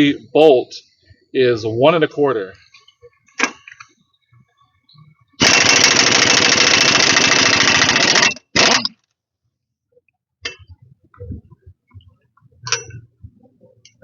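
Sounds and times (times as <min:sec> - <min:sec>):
impact wrench rattling: 0:05.4 - 0:09.0.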